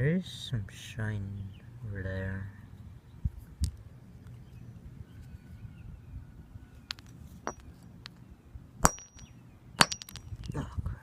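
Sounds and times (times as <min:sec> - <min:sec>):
hammer striking rock: 0:08.8 - 0:10.3.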